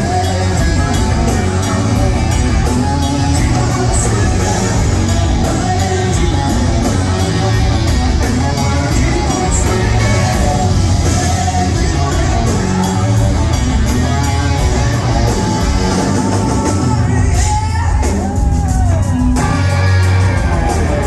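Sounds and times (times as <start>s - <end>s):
drum kit: 0.0s - 21.0s
electric guitar: 0.0s - 21.0s
person singing: 0.0s - 21.0s.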